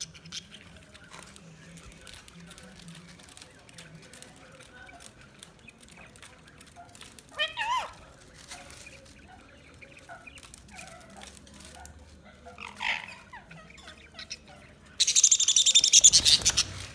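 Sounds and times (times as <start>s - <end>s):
budgies chirping: 0.0s - 16.9s
harsh rapid bird chatter: 0.0s - 16.9s.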